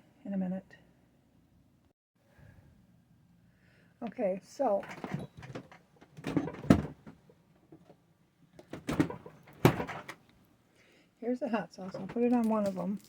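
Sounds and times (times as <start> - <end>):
objects knocking and clunking: 4.8 - 10.3, 11.8 - 13.0.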